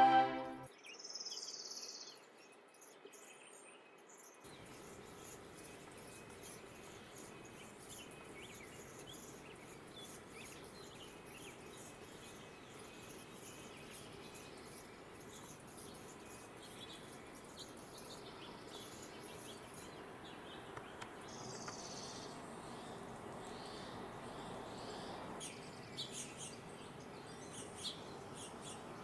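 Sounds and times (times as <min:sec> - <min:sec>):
brief high tone: 0:00.0 - 0:00.7
outdoor background noise: 0:00.0 - 0:29.0
hummingbird chirping: 0:04.5 - 0:29.0.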